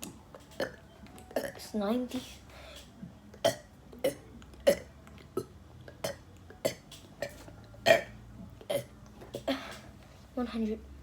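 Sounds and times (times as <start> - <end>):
person burping: 1.4 - 1.6, 3.4 - 9.8.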